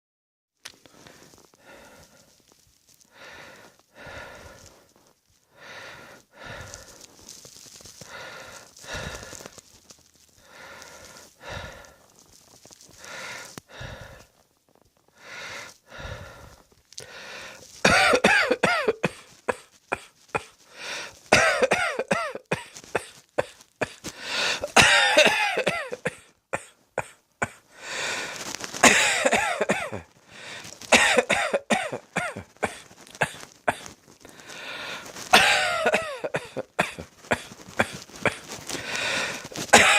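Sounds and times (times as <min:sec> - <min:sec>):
wheezing breaths: 0:00.8 - 0:14.4, 0:15.1 - 0:17.8, 0:19.0 - 0:21.3, 0:22.6 - 0:26.4, 0:27.6 - 0:31.2, 0:32.0 - 0:39.9
person coughing: 0:17.9 - 0:20.5, 0:21.3 - 0:27.6, 0:28.8 - 0:30.1, 0:30.9 - 0:33.9, 0:35.3 - 0:38.5, 0:39.2 - 0:39.9.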